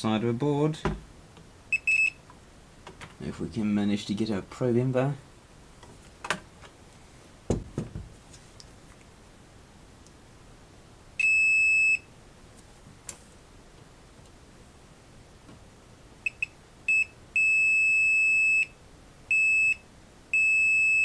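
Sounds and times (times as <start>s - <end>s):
multimeter continuity beeps: 1.7s - 2.2s, 11.2s - 12.1s, 16.2s - 19.8s, 20.4s - 21.0s.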